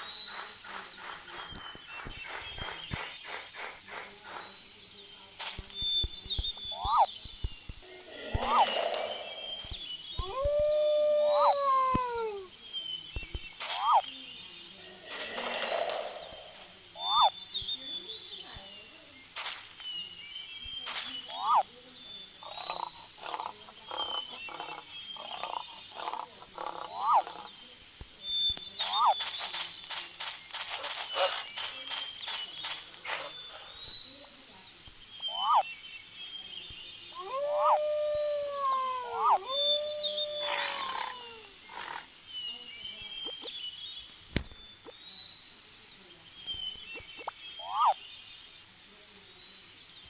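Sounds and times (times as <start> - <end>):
high bird-like whistles: 5.8 - 12.4
animal cries rising and falling: 8.1 - 9.5, 10.2 - 12.5, 37.2 - 41.6.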